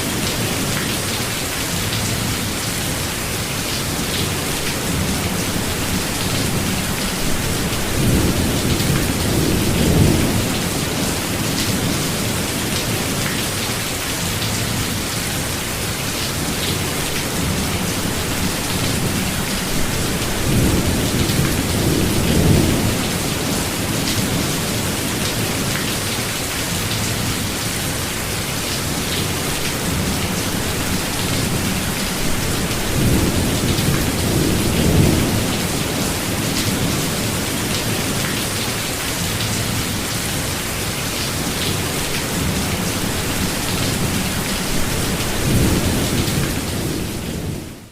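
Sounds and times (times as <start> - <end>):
steady rain on forest: 0.0 - 47.9
rolling thunder: 17.4 - 25.2.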